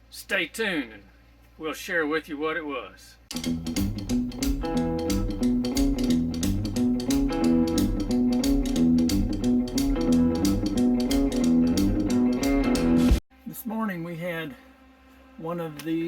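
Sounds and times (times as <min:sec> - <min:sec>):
guitar-driven instrumental music: 0:03.3 - 0:13.2.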